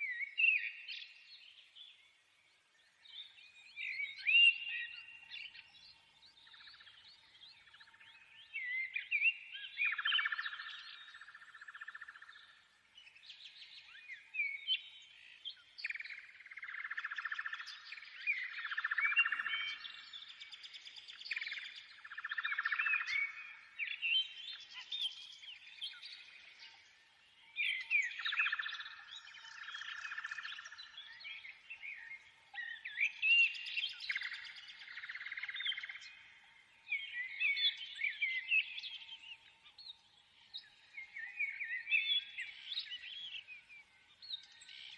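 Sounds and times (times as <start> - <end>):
small birds chirping: 0.0 - 44.9.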